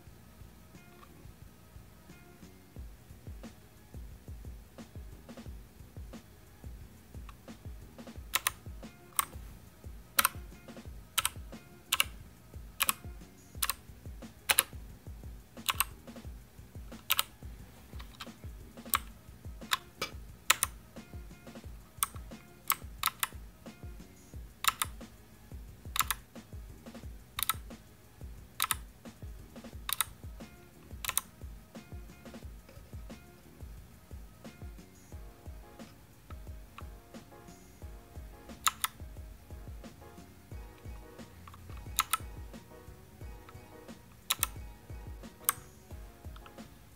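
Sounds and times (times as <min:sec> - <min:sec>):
background music with low beat: 0:00.0 - 0:46.9
mechanical keyboard key clicks: 0:08.3 - 0:08.6, 0:10.2 - 0:10.4, 0:14.5 - 0:14.7, 0:15.6 - 0:15.9, 0:17.0 - 0:17.3, 0:22.0 - 0:23.3, 0:24.6 - 0:25.0, 0:26.0 - 0:26.2, 0:27.4 - 0:27.6, 0:29.9 - 0:30.1, 0:31.0 - 0:31.3, 0:38.6 - 0:39.0, 0:41.5 - 0:42.3, 0:44.3 - 0:44.6.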